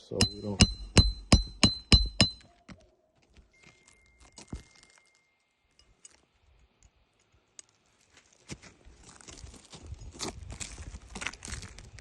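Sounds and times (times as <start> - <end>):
sharp knock: 0.0 - 2.4.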